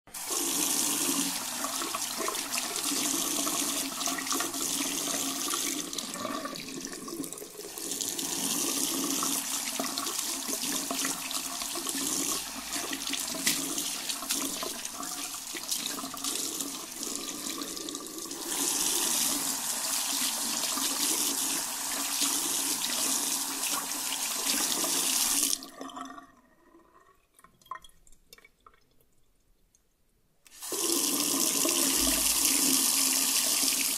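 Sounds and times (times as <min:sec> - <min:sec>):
tap water splashing: 0:09.8 - 0:16.1.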